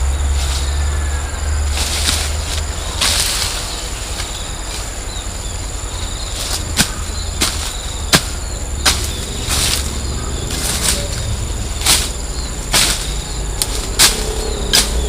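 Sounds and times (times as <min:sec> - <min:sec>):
high insect drone: 0:00.0 - 0:15.0
low rumble: 0:00.0 - 0:15.0
sharp knocks: 0:06.5 - 0:09.9, 0:10.5 - 0:15.0.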